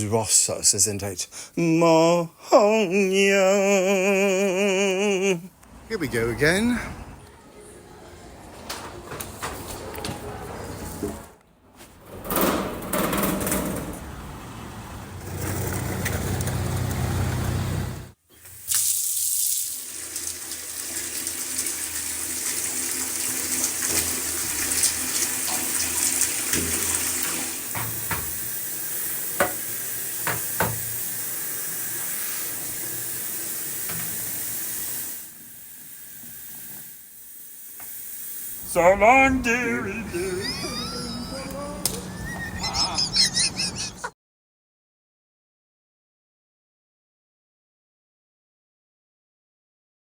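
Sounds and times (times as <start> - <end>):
running water rushing: 19.6 - 35.3.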